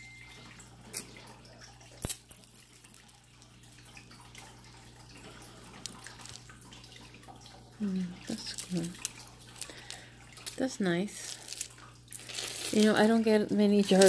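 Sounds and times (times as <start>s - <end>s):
jewelry beads clicking: 11.2s - 14.0s.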